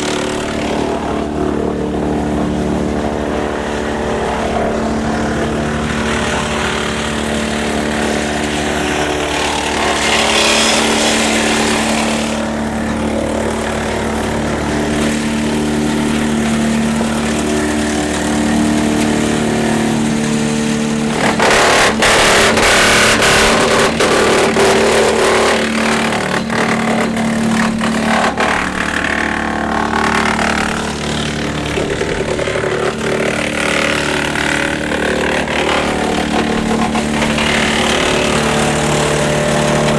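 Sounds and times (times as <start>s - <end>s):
branches cracking in wood chipper: 0.0s - 39.9s
tractor engine running: 0.0s - 39.9s.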